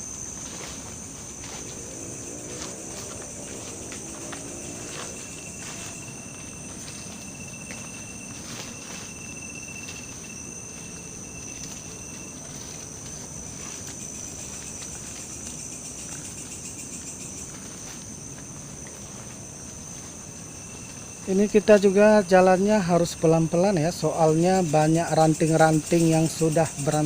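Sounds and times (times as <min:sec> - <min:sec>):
footsteps crunching on twigs: 0:00.0 - 0:21.4
insects chirring: 0:00.0 - 0:27.0.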